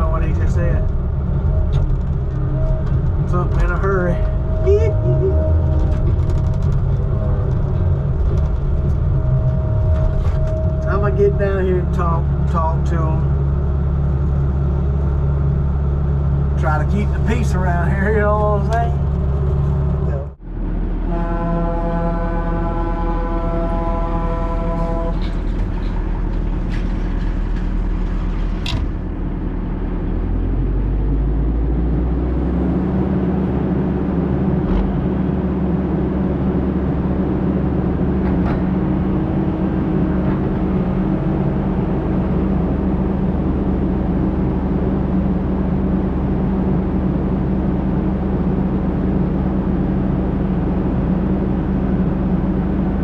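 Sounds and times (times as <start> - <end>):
heavy diesel engine running: 0.0 - 53.0
horn tone: 2.4 - 6.2, 21.0 - 25.8.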